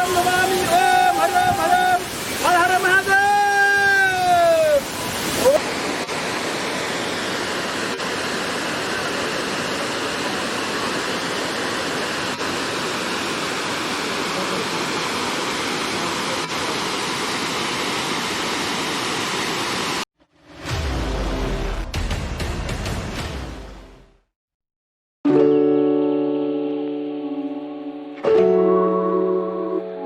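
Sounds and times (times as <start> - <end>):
waterfall rushing: 0.0 - 20.0.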